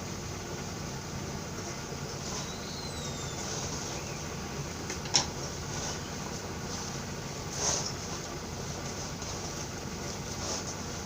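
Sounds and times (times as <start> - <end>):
steady background hum: 0.0 - 11.0
hands kneading mixture in a bowl: 5.3 - 11.0.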